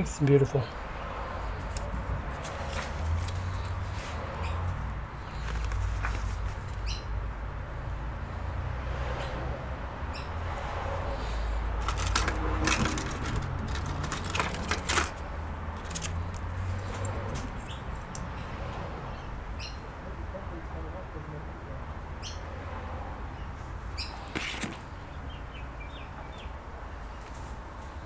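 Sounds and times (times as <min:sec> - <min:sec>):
sharp clicks and knocks: 0:11.8 - 0:18.3.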